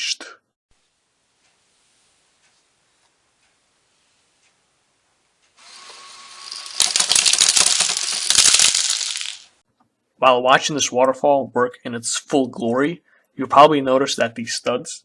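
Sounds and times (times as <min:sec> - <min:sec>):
small electric motor running: 0:05.6 - 0:09.4
plastic pieces clattering: 0:05.7 - 0:09.6.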